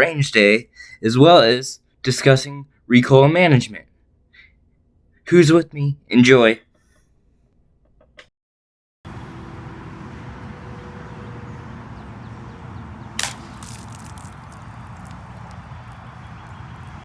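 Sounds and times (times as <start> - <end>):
outdoor background rumble: 9.1 - 17.0
gunshot with echo: 13.2 - 16.4.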